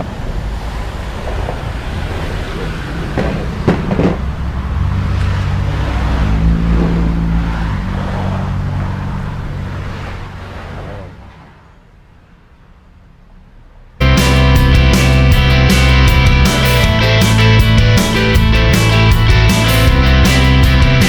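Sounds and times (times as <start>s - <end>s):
vehicle engine passing by: 0.4s - 11.6s.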